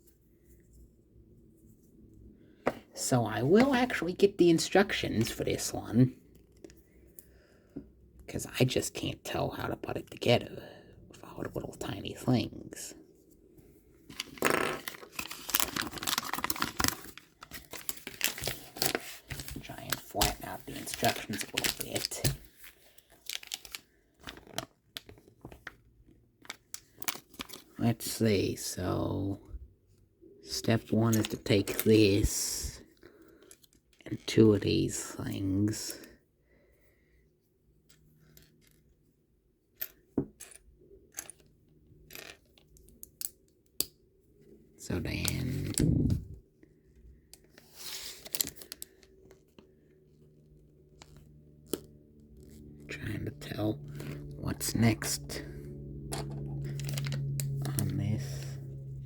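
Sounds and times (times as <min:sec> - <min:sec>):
paper crinkling and rustling: 0:14.1 - 0:25.8, 0:26.5 - 0:27.8.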